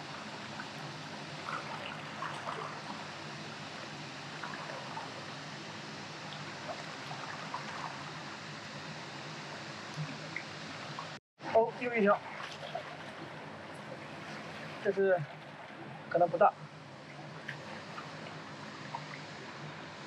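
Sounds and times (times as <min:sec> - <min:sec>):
river water flowing: 0:00.0 - 0:20.0
small trickling splashes: 0:01.4 - 0:03.1, 0:12.1 - 0:16.1.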